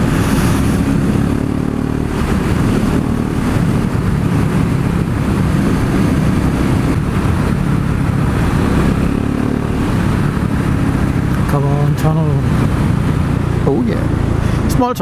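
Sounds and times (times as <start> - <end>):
wind noise on microphone: 0.0 - 14.7
motorcycle engine running: 0.0 - 15.0.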